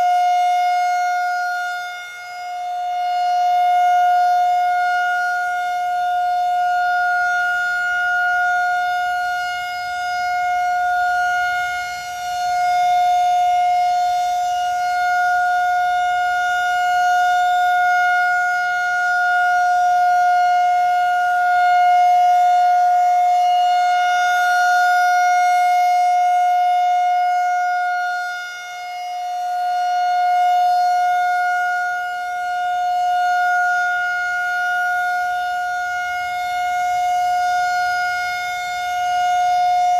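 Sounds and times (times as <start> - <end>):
outdoor warning siren steady tone: 0.0 - 39.9.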